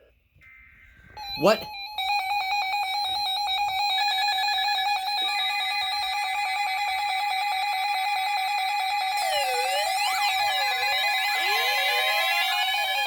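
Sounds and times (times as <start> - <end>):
synthesized electronic tones: 1.2 - 13.0
fast pulsing tone: 4.2 - 13.0.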